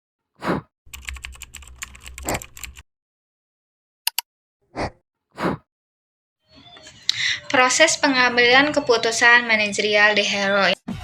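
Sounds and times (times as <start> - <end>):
rapid keyboard clicking: 0.9 - 2.8.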